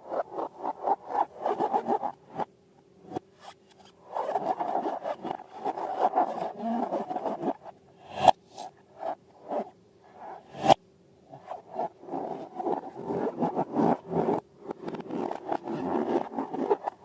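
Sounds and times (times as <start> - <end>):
hands rubbing balloons: 0.0 - 2.5, 3.1 - 8.4
rubbing and scraping: 0.0 - 2.5, 3.1 - 17.0.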